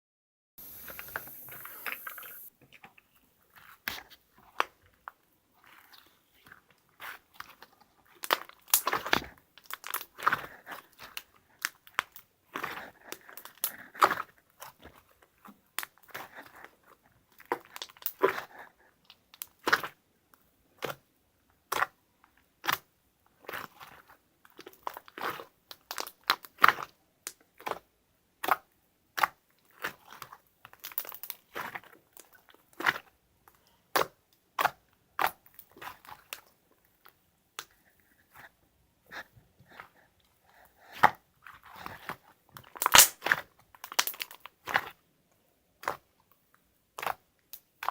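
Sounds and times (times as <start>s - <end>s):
steady hiss: 0.6s - 2.5s.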